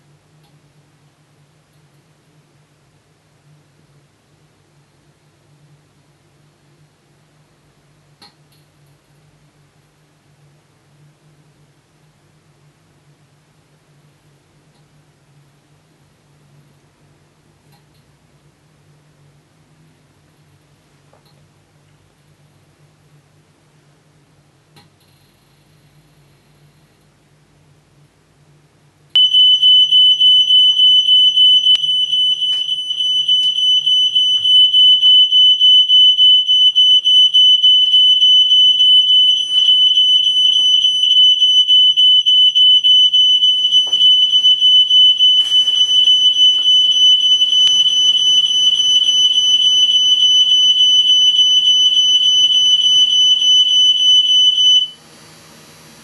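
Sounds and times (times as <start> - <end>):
ventilation fan humming: 0.0 - 56.0
smoke alarm pulsing tone: 29.2 - 55.1.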